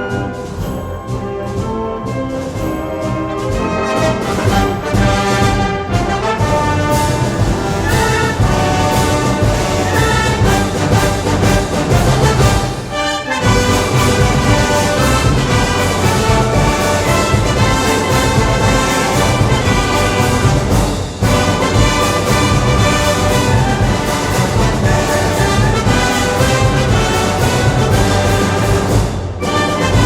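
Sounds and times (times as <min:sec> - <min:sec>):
brass band playing: 0:00.0 - 0:30.0.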